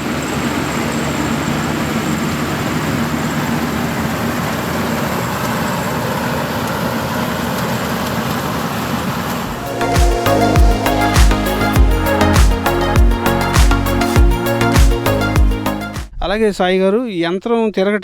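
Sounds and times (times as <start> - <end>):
combine harvester running: 0.0 - 15.3.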